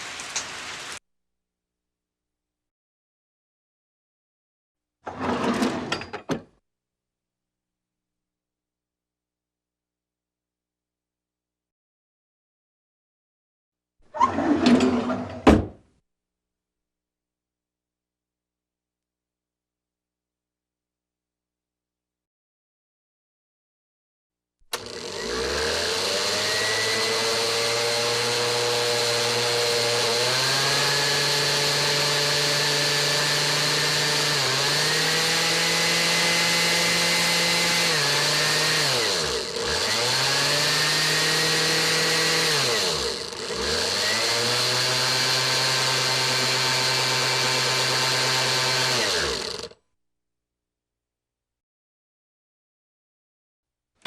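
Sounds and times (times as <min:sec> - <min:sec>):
appliance motor whirring: 0:24.7 - 0:49.8.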